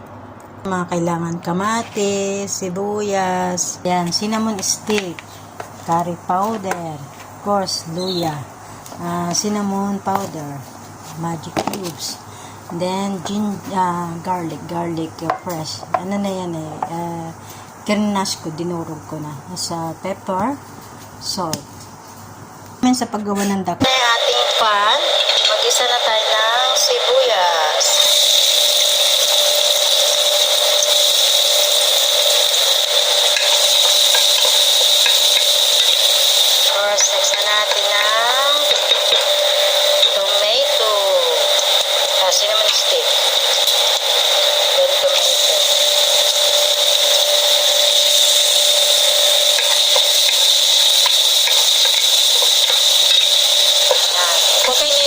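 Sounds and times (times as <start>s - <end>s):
onions sizzling in oil: 4.1s - 19.3s, 23.9s - 55.0s
steady high whine: 23.8s - 55.0s
stirring clicks: 49.5s - 55.0s.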